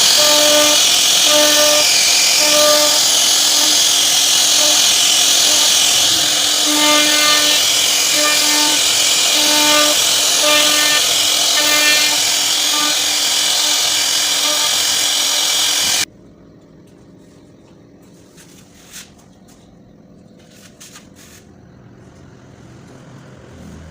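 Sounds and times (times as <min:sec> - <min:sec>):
router bit cutting wood: 0:00.0 - 0:16.1
machine humming tone: 0:00.0 - 0:18.1.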